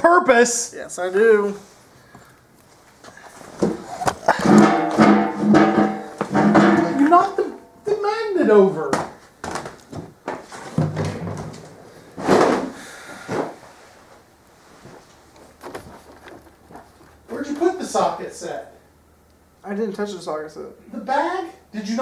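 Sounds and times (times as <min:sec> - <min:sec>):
tools and parts knocking: 0:04.3 - 0:07.4
music with drums: 0:04.4 - 0:07.4.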